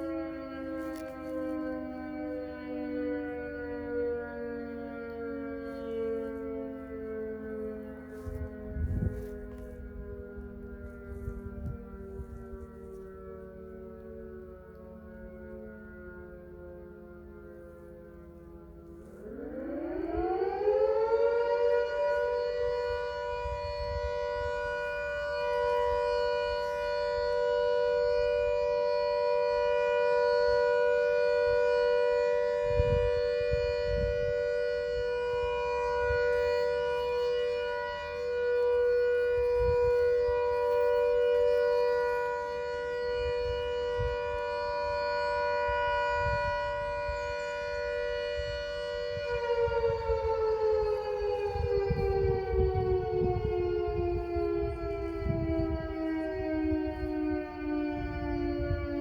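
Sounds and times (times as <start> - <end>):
siren two-note wail: 0.0 - 59.0.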